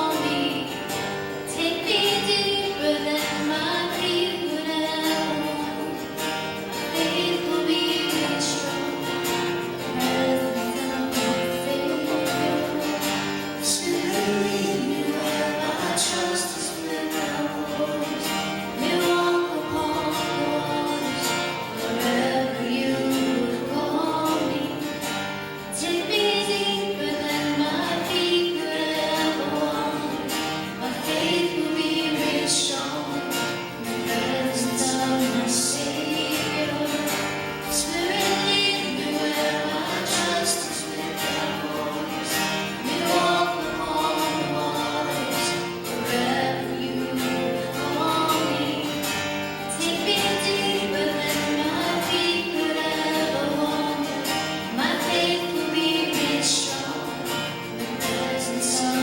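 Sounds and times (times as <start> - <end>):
gospel singing: 0.0 - 59.0.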